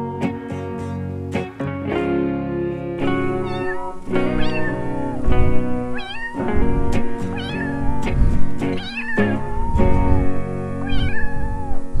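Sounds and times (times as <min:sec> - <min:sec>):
music with plucked notes: 0:00.0 - 0:12.0
cat meowing: 0:03.0 - 0:12.0.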